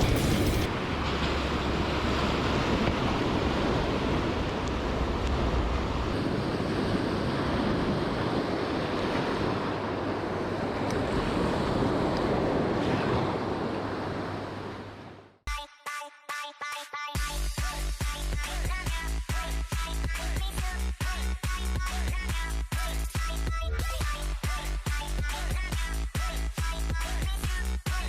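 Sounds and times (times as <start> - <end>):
wind buffeting microphone: 0.0 - 14.4
sea waves washing: 0.0 - 15.3.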